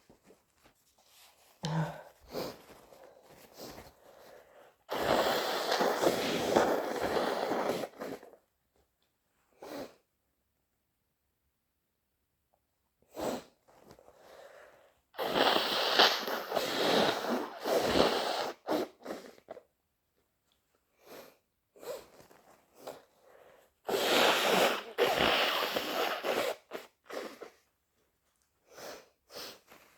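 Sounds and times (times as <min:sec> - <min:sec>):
person sniffing: 0:01.3 - 0:08.3, 0:15.2 - 0:19.4, 0:22.8 - 0:27.6
person blowing nose: 0:01.6 - 0:08.4, 0:09.6 - 0:10.0, 0:13.1 - 0:13.6, 0:15.2 - 0:19.6, 0:21.0 - 0:27.7, 0:28.6 - 0:29.9.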